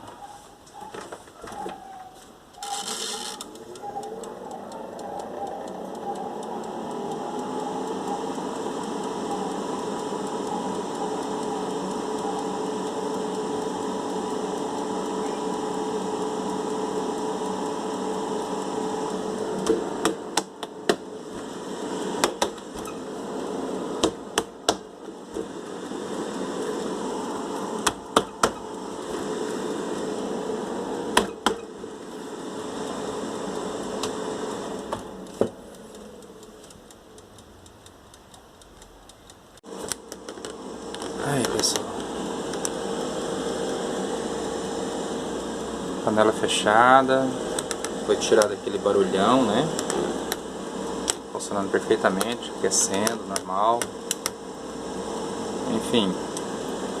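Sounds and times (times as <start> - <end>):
air fryer fan hum: 0.0 - 57.0
sharp clicks and knocks: 22.2 - 23.0, 24.0 - 25.7, 27.8 - 28.7, 31.1 - 31.7, 34.8 - 42.7, 47.6 - 48.6, 52.2 - 54.4.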